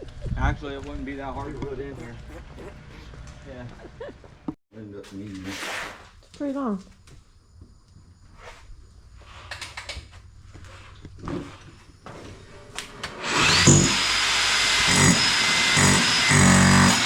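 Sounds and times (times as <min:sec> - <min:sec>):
power drill boring a hole: 0:13.1 - 0:17.0.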